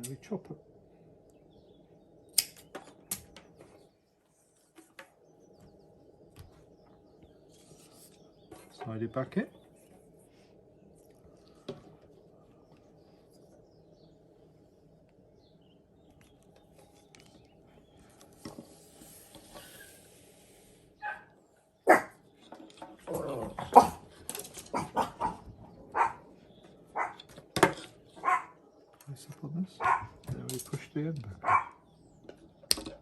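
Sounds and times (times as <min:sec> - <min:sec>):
dog barking: 0:21.0 - 0:22.2, 0:23.6 - 0:24.0, 0:24.7 - 0:26.3, 0:27.0 - 0:27.2, 0:28.2 - 0:28.6, 0:29.8 - 0:30.2, 0:31.4 - 0:31.8.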